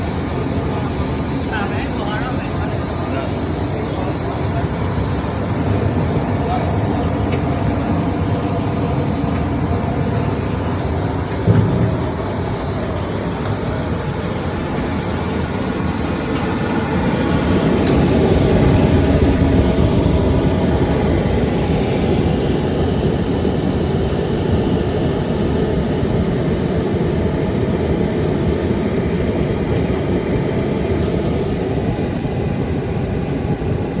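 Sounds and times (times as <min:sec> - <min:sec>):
industrial machine din: 0:00.0 - 0:25.6
thin high whine: 0:00.0 - 0:34.0
sharp knock: 0:11.4 - 0:12.1.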